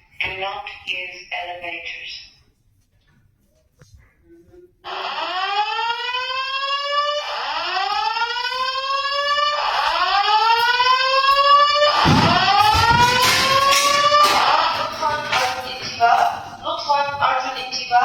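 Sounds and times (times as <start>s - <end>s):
fire alarm whoop tone: 4.8s - 15.5s.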